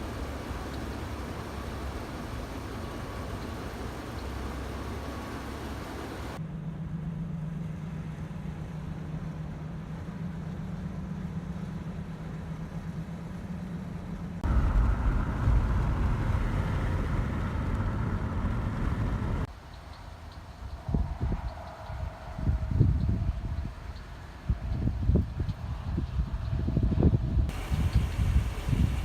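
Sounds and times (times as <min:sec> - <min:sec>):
vehicle engine running: 0:00.0 - 0:19.5, 0:27.5 - 0:29.0.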